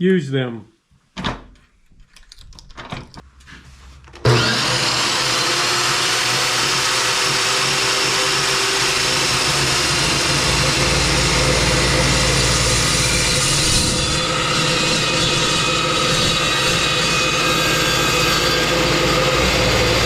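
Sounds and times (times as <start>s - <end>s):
chop saw motor running: 4.2s - 20.0s.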